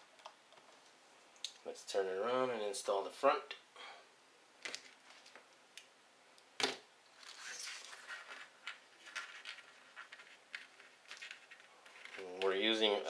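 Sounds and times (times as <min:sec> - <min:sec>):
small rustling: 0:04.6 - 0:05.9, 0:07.1 - 0:13.0.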